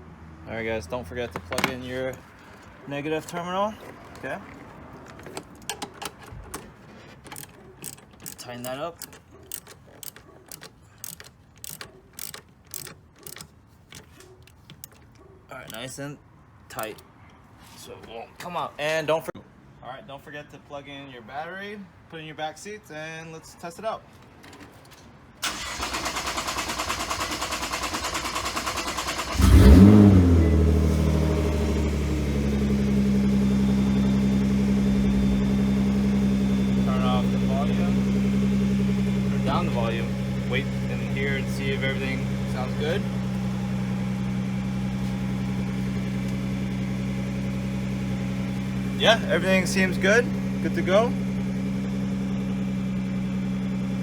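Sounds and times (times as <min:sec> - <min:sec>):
ratchet wrench clicking: 0:07.3 - 0:15.0
car engine starting and idling: 0:25.4 - 0:54.0.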